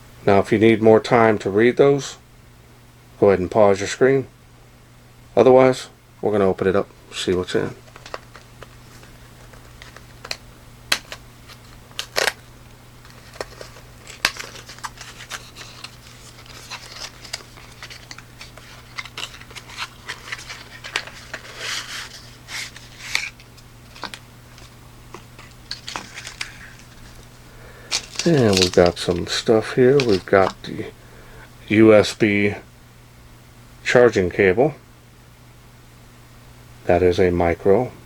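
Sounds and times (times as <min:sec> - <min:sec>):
low steady hum: 0:00.0 - 0:38.0
rustling: 0:07.1 - 0:31.0.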